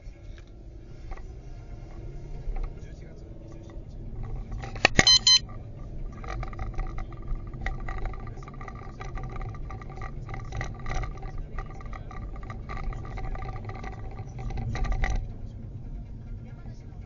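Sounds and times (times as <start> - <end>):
low rumble of car driving: 0.0 - 17.0
dashcam knocking and rattling: 3.6 - 15.4.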